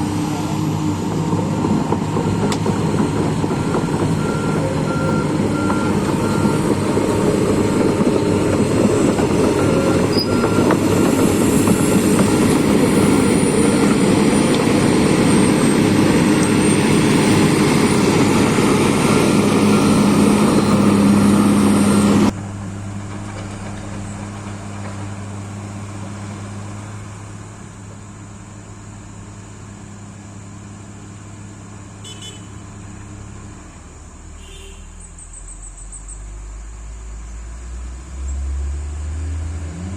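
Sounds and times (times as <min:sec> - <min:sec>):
heavy diesel machinery running: 0:00.0 - 0:39.9
steady engine hum: 0:00.0 - 0:39.9
reversing alarm beeping: 0:03.5 - 0:06.8, 0:09.5 - 0:14.2.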